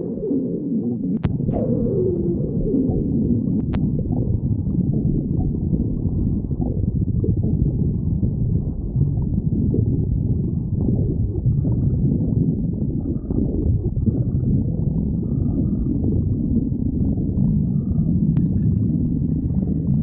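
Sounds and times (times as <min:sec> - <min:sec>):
stomach growling: 0:00.0 - 0:20.0.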